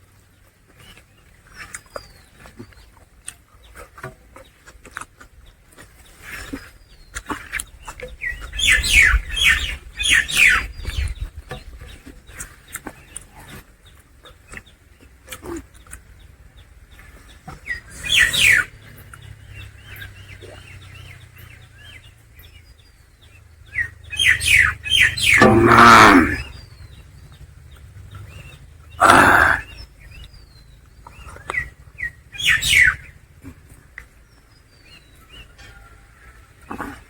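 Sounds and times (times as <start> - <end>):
chewing clicks: 0.8 - 8.5, 12.3 - 16.2.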